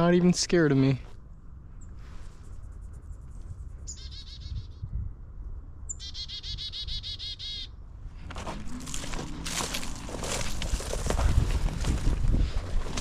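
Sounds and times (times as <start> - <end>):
chickadee calling: 3.8 - 4.9, 5.9 - 7.8.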